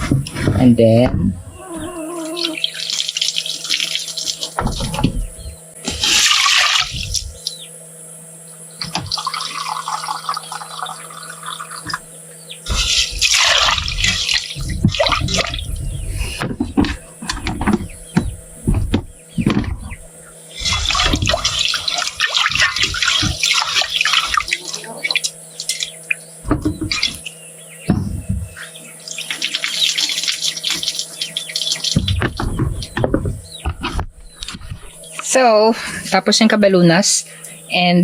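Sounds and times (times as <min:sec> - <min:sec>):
water sloshing in a pot: 0:12.7 - 0:15.9, 0:20.5 - 0:26.0, 0:29.0 - 0:33.0.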